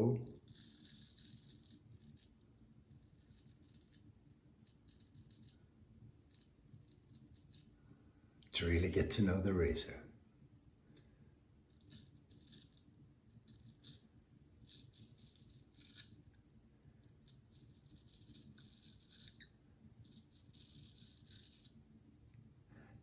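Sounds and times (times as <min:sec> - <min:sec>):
razor scraping stubble: 0:00.4 - 0:02.4, 0:11.7 - 0:16.2, 0:17.2 - 0:21.8.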